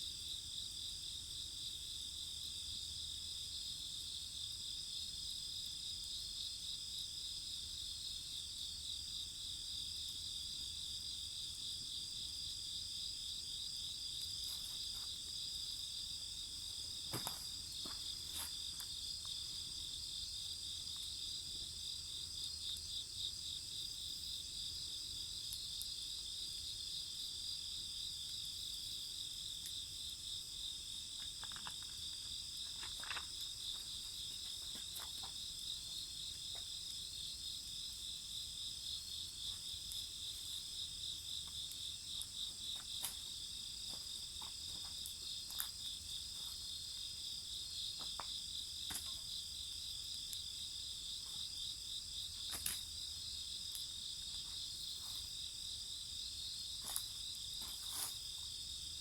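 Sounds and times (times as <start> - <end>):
crickets and night insects chirping: 0.0 - 59.0
wood fire crackling: 29.5 - 51.4.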